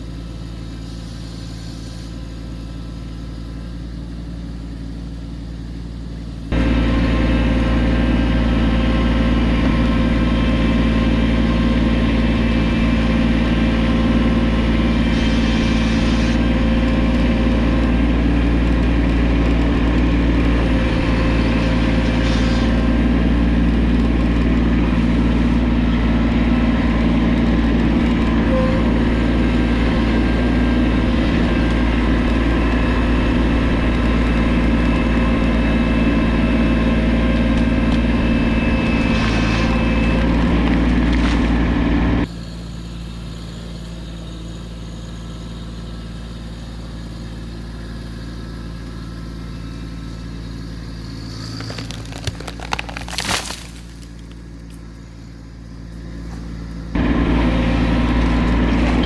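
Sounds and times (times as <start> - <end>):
tractor diesel engine running: 0.0 - 59.0.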